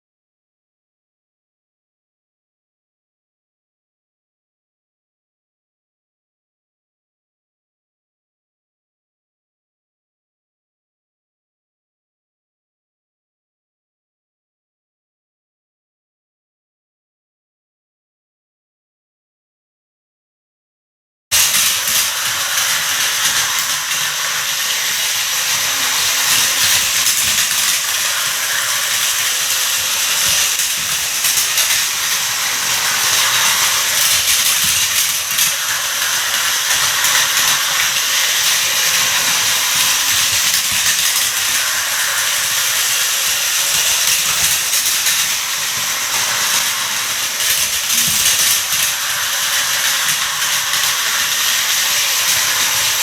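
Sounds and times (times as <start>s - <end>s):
toy train rattling on plastic track: 21.3s - 53.0s.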